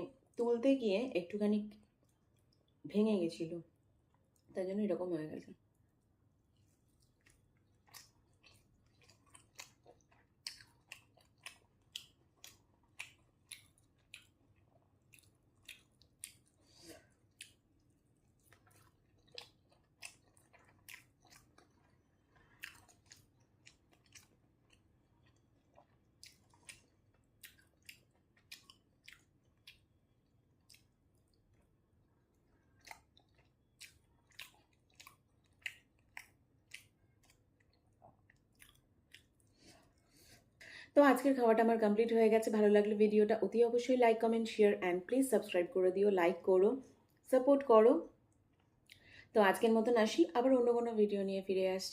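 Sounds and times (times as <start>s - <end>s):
faint room hum: 0.0s - 51.9s
wet chewing mouth sounds: 6.6s - 40.5s.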